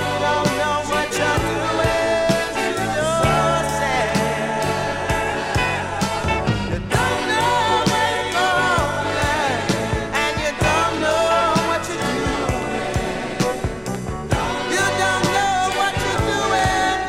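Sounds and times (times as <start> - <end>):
soul band music: 0.0 - 17.0.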